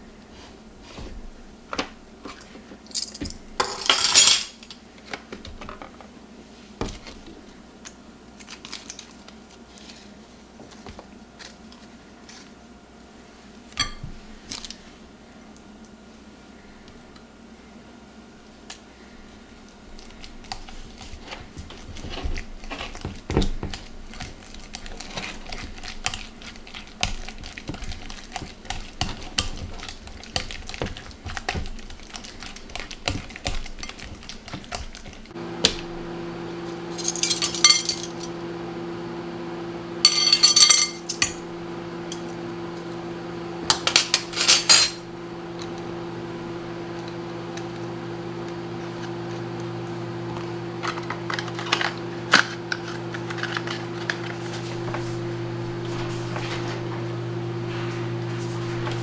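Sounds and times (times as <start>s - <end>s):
appliance hum: 0.0s - 59.0s
dishes and cutlery clattering: 3.0s - 4.6s, 37.0s - 38.3s, 40.1s - 41.5s, 43.7s - 45.1s.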